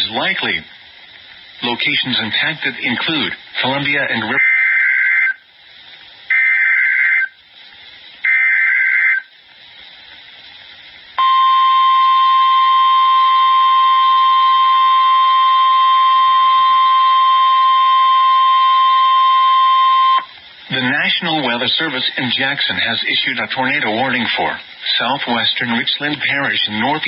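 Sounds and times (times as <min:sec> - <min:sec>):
steady alarm tone: 0:04.4 - 0:05.4, 0:06.3 - 0:07.4, 0:08.2 - 0:09.3, 0:11.2 - 0:20.3.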